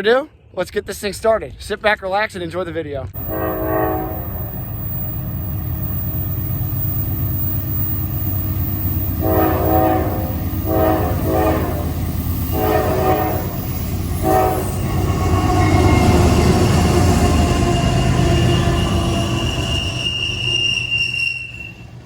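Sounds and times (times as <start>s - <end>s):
locomotive horn blasts: 3.2s - 6.6s, 8.9s - 19.2s
locomotive engine rumble: 3.2s - 22.0s.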